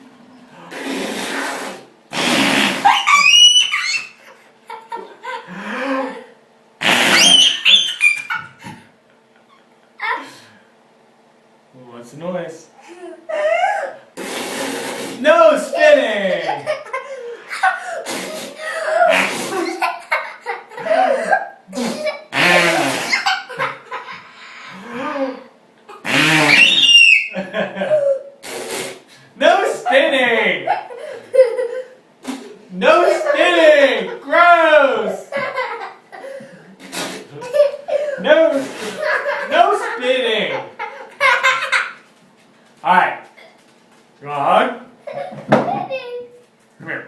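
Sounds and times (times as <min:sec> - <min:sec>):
toddler blowing raspberries: 0:00.6 - 0:04.2, 0:06.8 - 0:08.2, 0:14.2 - 0:15.2, 0:17.8 - 0:19.8, 0:21.7 - 0:23.5, 0:26.0 - 0:27.3, 0:28.4 - 0:29.1, 0:36.8 - 0:37.4, 0:38.5 - 0:39.4
toddler squealing laughter: 0:02.7 - 0:04.2, 0:06.8 - 0:08.7, 0:13.3 - 0:14.0, 0:16.6 - 0:24.2, 0:26.0 - 0:28.4, 0:40.7 - 0:42.0.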